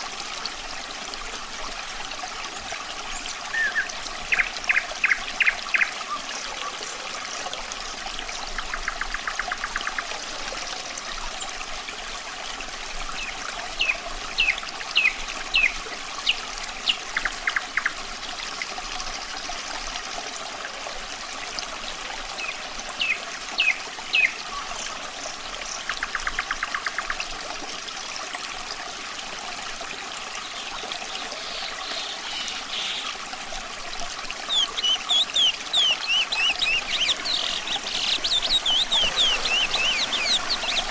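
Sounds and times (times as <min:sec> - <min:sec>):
running water trickling: 0:00.0 - 0:40.9
nightingale singing: 0:34.4 - 0:40.9.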